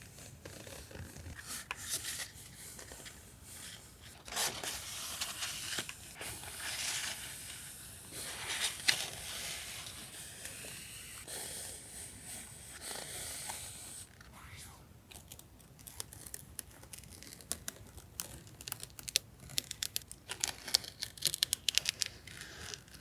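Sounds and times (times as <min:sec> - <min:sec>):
packaging rustling and crinkling: 0:15.8 - 0:23.0.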